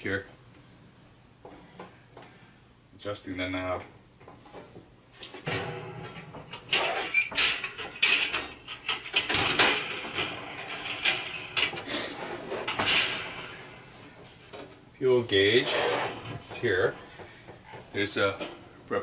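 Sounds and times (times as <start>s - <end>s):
rubbing and scraping: 15.3s - 16.9s.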